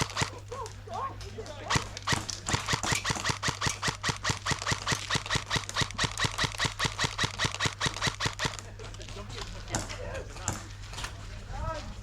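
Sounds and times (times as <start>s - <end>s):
rapid evenly spaced clicks: 0.0s - 0.3s, 1.7s - 8.7s.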